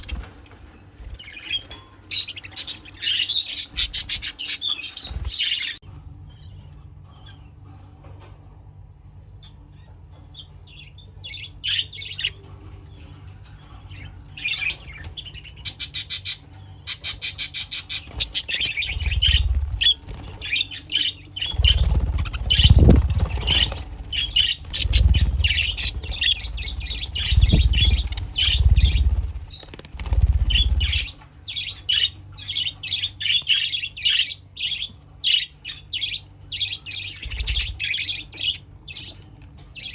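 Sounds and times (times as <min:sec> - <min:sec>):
budgerigars chirping and squawking: 0:00.0 - 0:08.2, 0:09.2 - 0:39.9
low thuds and rumbles: 0:21.6 - 0:29.5.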